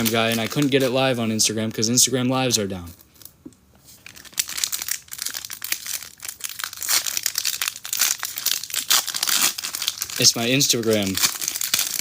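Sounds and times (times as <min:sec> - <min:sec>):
wrapper tearing and crinkling: 0:00.0 - 0:01.1, 0:04.0 - 0:12.0.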